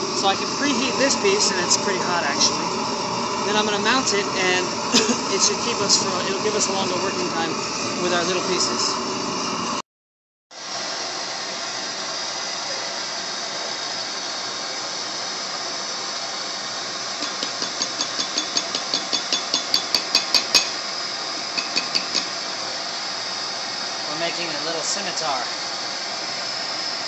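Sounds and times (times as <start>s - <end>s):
blowtorch hissing: 0.0s - 9.8s, 20.4s - 27.0s.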